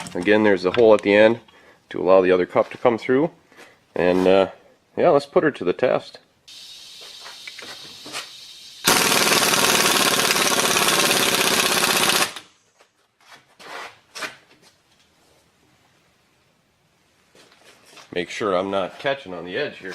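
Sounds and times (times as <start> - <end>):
steady air hiss: 6.5 - 8.9
impact wrench hammering: 8.8 - 12.4.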